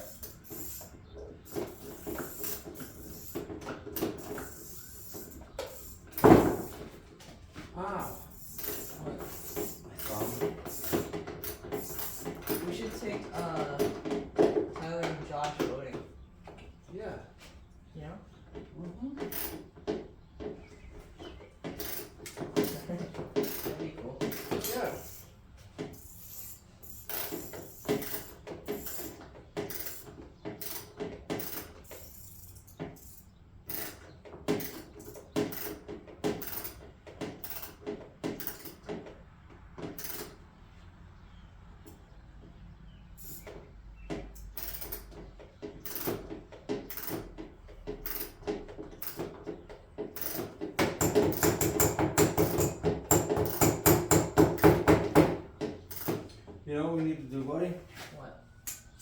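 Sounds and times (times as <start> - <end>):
ratchet wrench clicking: 0.0 - 0.9, 1.5 - 6.7, 8.0 - 12.7, 23.4 - 25.3, 25.9 - 35.8, 37.4 - 37.8, 38.4 - 38.8, 44.4 - 45.2, 45.8 - 46.2, 46.9 - 47.2, 48.0 - 48.4, 49.0 - 49.2, 50.2 - 53.9, 55.9 - 56.2.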